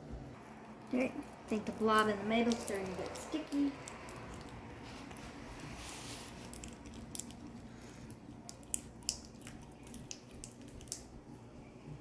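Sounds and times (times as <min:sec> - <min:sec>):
slime squished by hand: 0:01.9 - 0:11.2.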